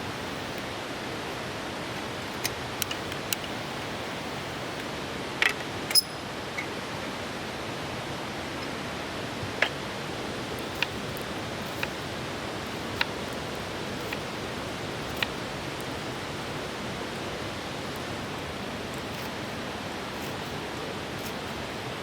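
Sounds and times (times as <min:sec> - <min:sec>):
river rushing: 0:08.9 - 0:22.0.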